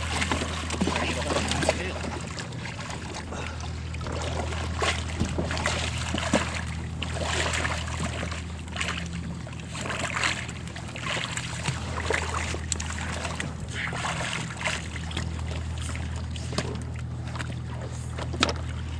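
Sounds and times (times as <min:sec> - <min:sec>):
steady low hum: 0:00.0 - 0:18.9
water splashing against kayak: 0:00.0 - 0:18.9.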